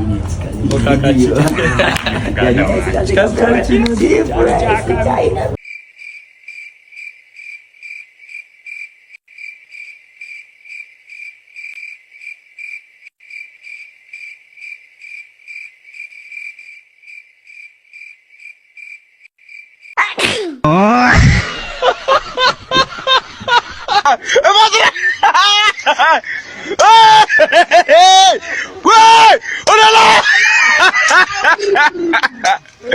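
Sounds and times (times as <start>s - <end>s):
speech: 0.0s - 5.6s
cricket chirping: 5.6s - 20.0s.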